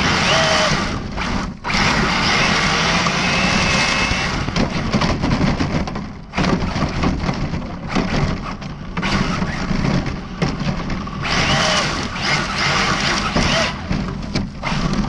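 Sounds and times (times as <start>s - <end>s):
rc car tyres crunching gravel: 3.0s - 15.0s.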